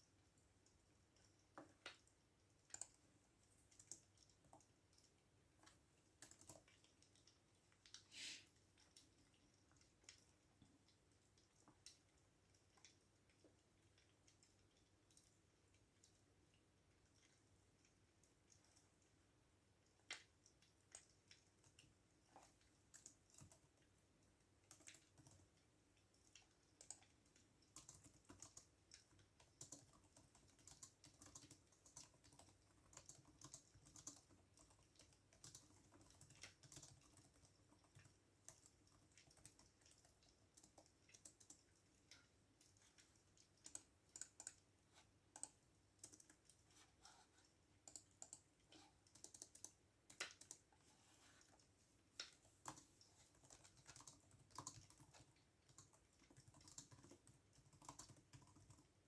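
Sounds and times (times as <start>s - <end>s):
computer keyboard typing: 0.0s - 8.0s, 19.8s - 23.9s, 24.6s - 47.2s, 47.8s - 50.7s, 51.4s - 59.0s.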